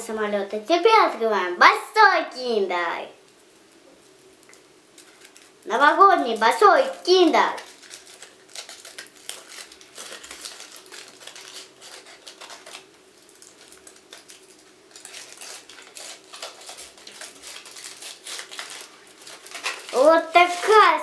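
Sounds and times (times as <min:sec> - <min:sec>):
foil wrapper crinkling: 0:03.2 - 0:21.0.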